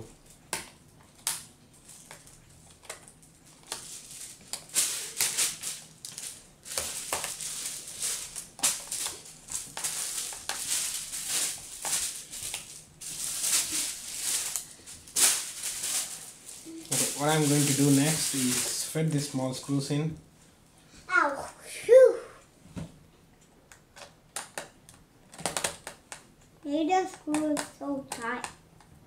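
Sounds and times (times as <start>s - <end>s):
plastic parts and screws rattling: 25.3s - 26.2s.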